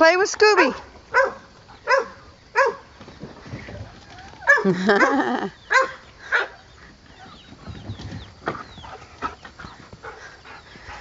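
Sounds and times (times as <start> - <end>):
dog yipping: 0.6 - 2.8
chicks peeping: 5.6 - 11.0
chickens clucking: 6.1 - 11.0.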